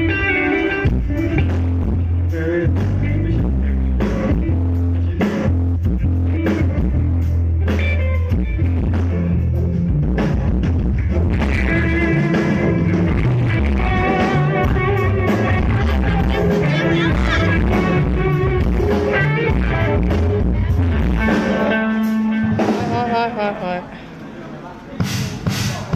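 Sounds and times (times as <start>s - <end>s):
live band playing blues rock: 0.0s - 23.6s
electric guitar: 0.0s - 24.1s
higher melody line: 11.0s - 23.8s.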